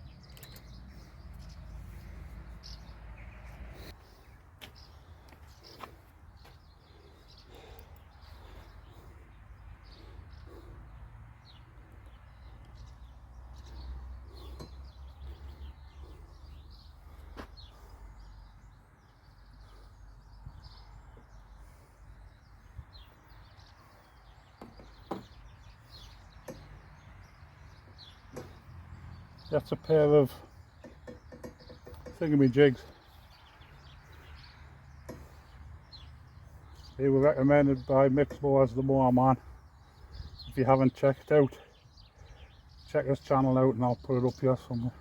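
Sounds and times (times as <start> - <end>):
bird chirps: 0.0 - 45.0
parts being handled clicking: 0.2 - 0.8.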